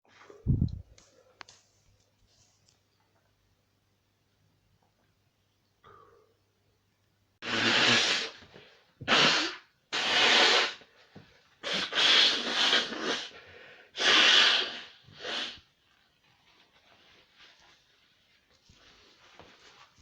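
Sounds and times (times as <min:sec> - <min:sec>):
person sneezing loudly: 0:09.0 - 0:10.8.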